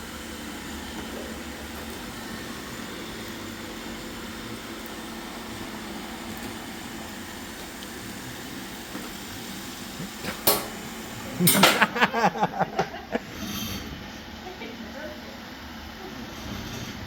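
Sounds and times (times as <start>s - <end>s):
robot vacuum whirring: 0.0s - 11.5s.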